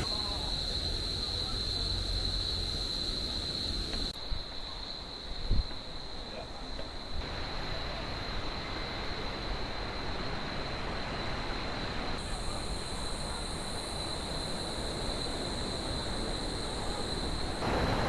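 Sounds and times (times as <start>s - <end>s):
high-pitched insect drone: 0.0s - 4.1s.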